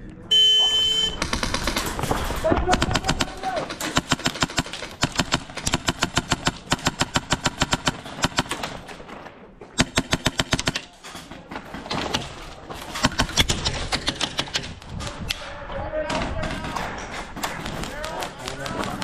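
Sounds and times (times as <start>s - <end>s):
airsoft guns firing bursts: 0.8s - 8.9s, 9.8s - 10.9s, 16.2s - 19.0s.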